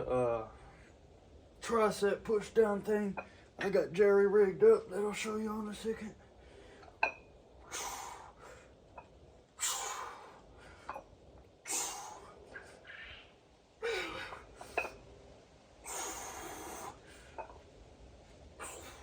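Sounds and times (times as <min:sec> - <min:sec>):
man breathing hard: 0:06.2 - 0:07.0, 0:07.6 - 0:08.8, 0:09.6 - 0:14.8, 0:15.8 - 0:17.5, 0:18.6 - 0:19.0.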